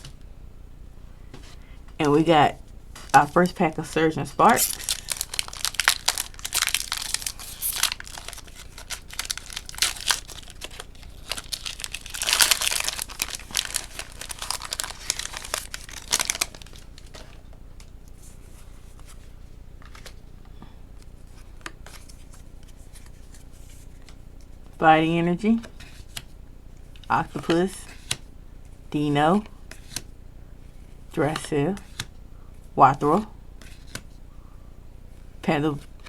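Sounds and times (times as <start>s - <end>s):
foil wrapper crinkling and tearing: 3.0s - 17.4s.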